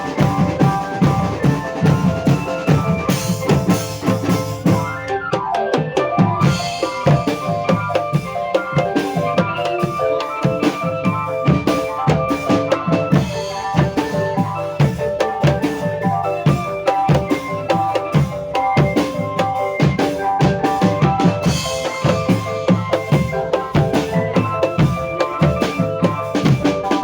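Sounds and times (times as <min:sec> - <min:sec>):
busy drum beat: 0:00.0 - 0:27.0.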